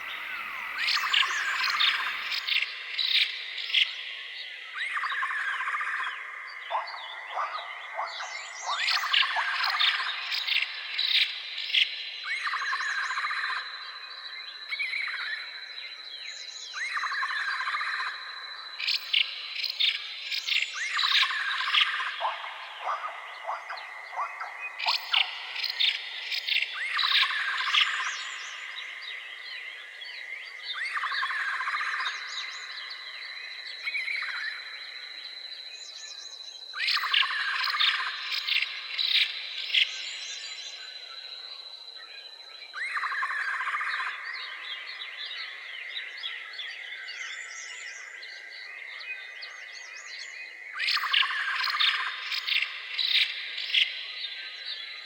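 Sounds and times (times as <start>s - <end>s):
high insect drone: 0.0s - 3.4s
birds chirping: 0.0s - 4.2s, 18.8s - 29.5s
birds chirping and trilling: 0.0s - 55.0s.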